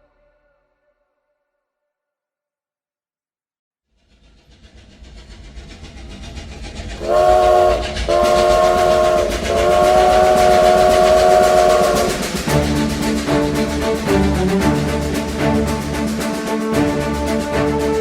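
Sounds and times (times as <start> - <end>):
music: 0.0 - 1.6, 11.6 - 18.0
train rumble: 4.0 - 18.0
train whistle blasts: 7.0 - 12.8.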